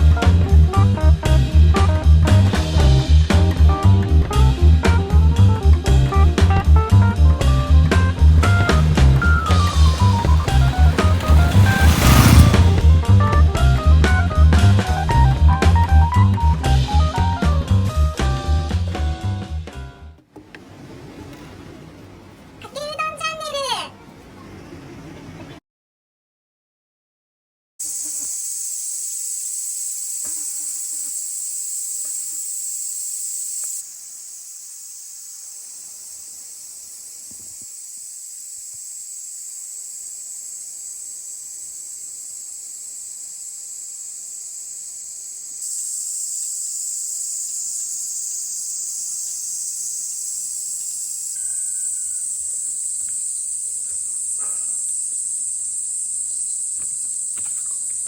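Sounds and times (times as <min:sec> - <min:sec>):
insects chirring: 0:08.2 - 0:12.8, 0:27.8 - 0:58.0.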